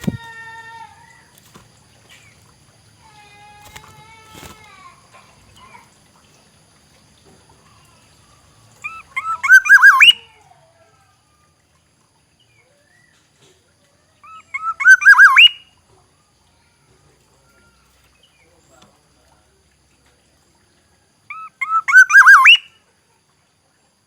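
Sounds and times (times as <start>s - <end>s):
bird singing fluty whistles: 8.9s - 10.2s, 14.2s - 15.6s, 21.3s - 22.7s.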